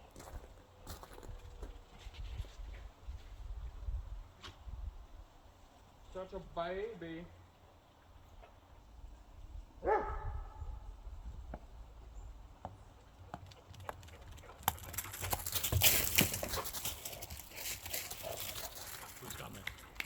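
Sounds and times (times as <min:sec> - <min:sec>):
paws scuffling on ground: 0:00.1 - 0:03.4, 0:13.2 - 0:20.0.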